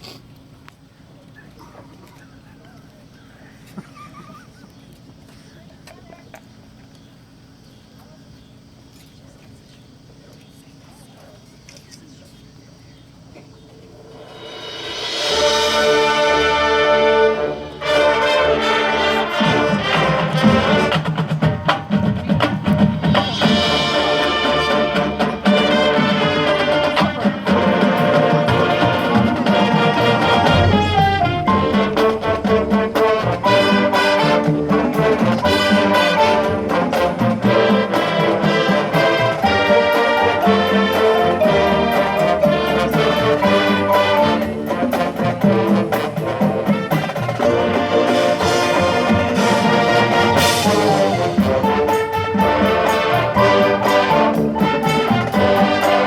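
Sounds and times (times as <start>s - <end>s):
percussion: 13.3s - 56.0s
trumpets and trombones: 14.0s - 22.4s, 23.0s - 56.0s
brass band playing: 14.0s - 56.0s.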